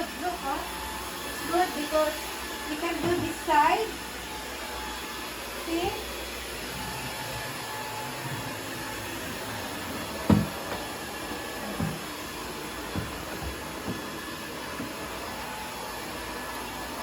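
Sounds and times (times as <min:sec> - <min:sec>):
vacuum cleaner running: 0:00.0 - 0:17.0
knocks: 0:10.2 - 0:10.9.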